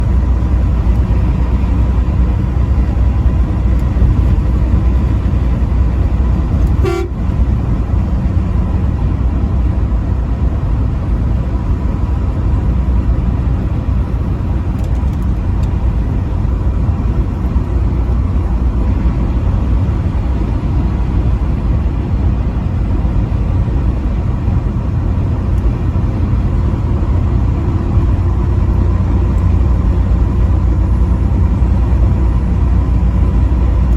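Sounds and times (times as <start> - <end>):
truck engine and road rumble: 0.0 - 33.9
truck horn toot: 6.6 - 7.5.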